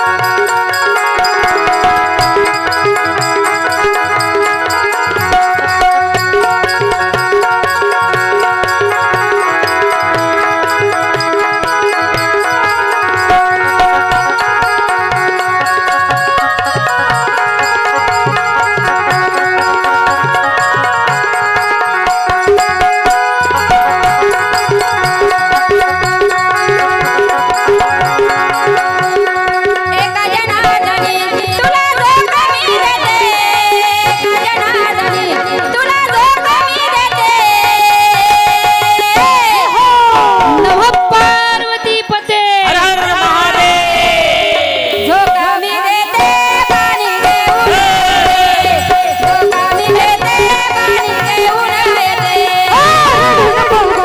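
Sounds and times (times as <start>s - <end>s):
hand drum beat: 0.0s - 41.6s, 44.9s - 54.0s
devotional music melody: 0.0s - 41.9s
harmonium: 0.0s - 54.0s
woman singing: 29.7s - 54.0s
hand-drum strokes: 44.2s - 54.0s.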